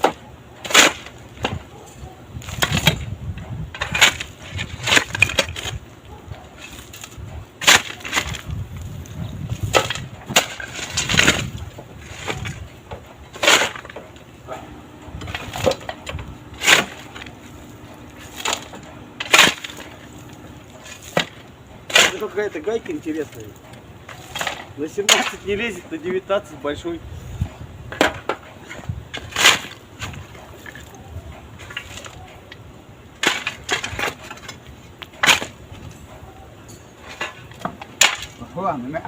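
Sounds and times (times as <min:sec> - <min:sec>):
faint steady hum: 0:00.1 - 0:22.0
hand tools clinking on metal: 0:33.3 - 0:38.5.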